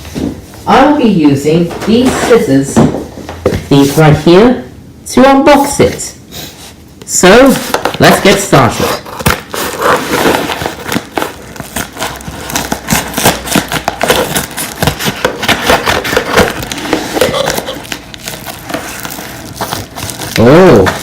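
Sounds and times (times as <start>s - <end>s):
tape and packaging crackling: 7.5s - 21.0s
scissors cutting cardboard: 7.7s - 21.0s.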